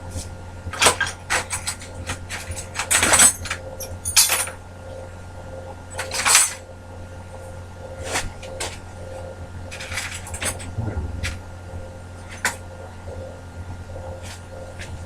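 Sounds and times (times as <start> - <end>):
low steady hum: 9.0 - 15.0.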